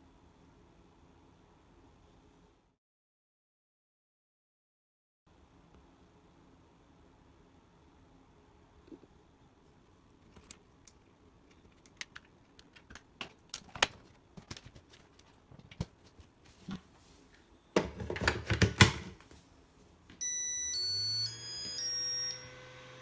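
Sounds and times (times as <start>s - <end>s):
plastic clicks and rattles: 10.3s - 15.9s
electronic beep melody: 20.2s - 22.7s
cooling fan spinning up: 20.6s - 23.0s.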